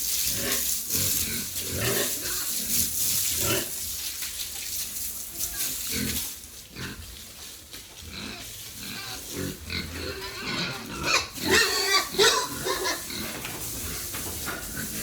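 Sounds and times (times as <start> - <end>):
pigs grunting and calling: 0.3 - 3.8, 8.0 - 15.0.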